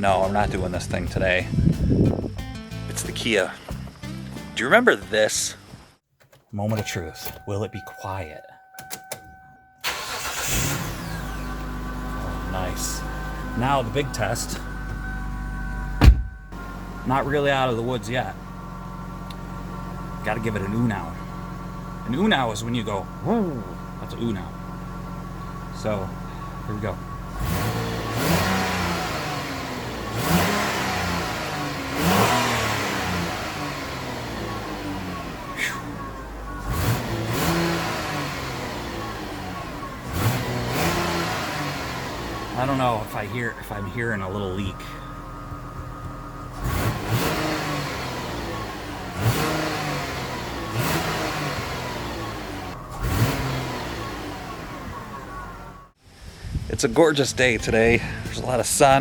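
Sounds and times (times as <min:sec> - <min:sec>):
car engine revving: 0:09.8 - 0:56.0.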